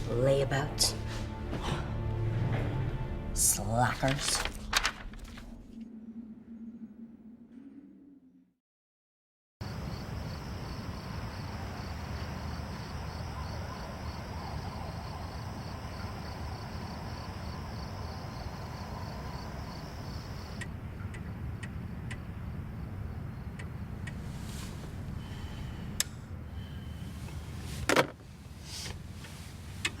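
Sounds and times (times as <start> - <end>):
constant low rumble: 0.0 - 8.2, 20.5 - 30.0
crickets chirping: 9.6 - 27.2.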